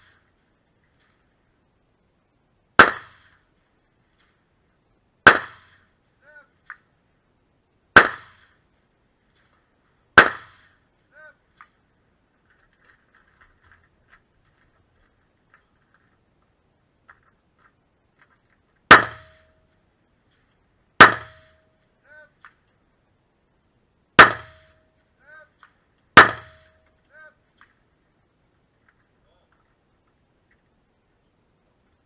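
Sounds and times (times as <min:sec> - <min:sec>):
rifle shots with echo: 0:02.8 - 0:03.4, 0:10.2 - 0:10.7.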